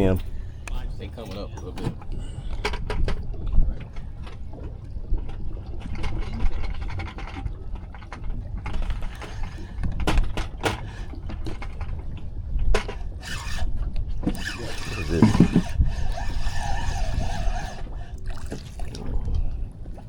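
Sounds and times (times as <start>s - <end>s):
fishing reel gears ratcheting: 13.2s - 13.7s, 14.3s - 18.0s.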